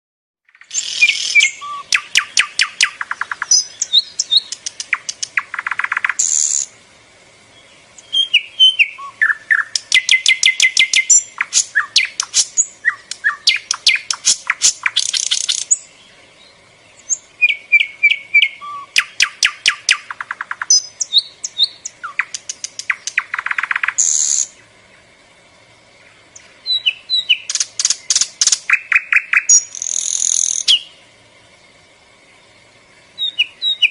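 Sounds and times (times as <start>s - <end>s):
small bird trilling: 0.5s - 6.7s, 8.0s - 15.9s, 17.1s - 24.5s, 26.6s - 31.0s.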